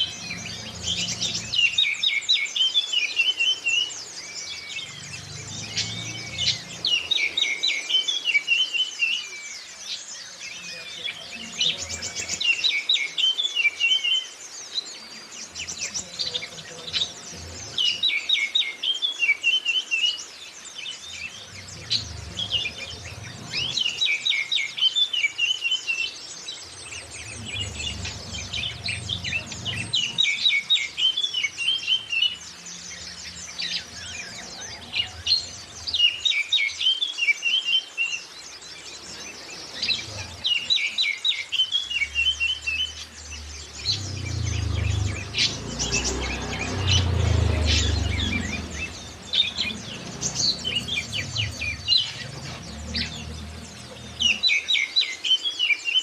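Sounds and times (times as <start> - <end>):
songbirds chirping: 0.0 - 56.0
low rumble: 4.5 - 7.4, 21.1 - 24.2, 26.6 - 36.0, 43.2 - 54.5.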